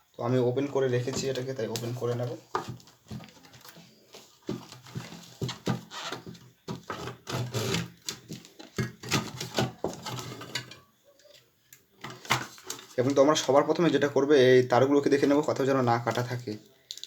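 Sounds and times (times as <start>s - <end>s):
hands handling speaker box parts: 0.7s - 10.8s, 11.9s - 14.0s.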